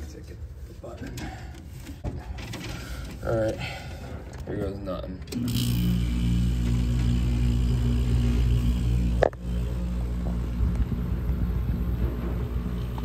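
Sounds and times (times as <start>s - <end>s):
air conditioner motor hum: 4.6s - 13.0s.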